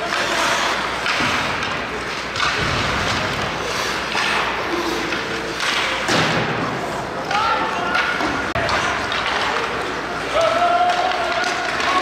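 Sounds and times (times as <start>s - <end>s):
skates scraping on ice: 0.0s - 6.1s
hockey sticks and puck knocking: 0.0s - 12.0s.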